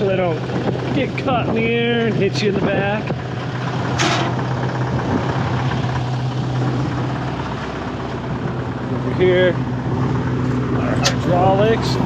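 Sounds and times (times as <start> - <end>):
excavator diesel engine idling: 0.0 - 12.0.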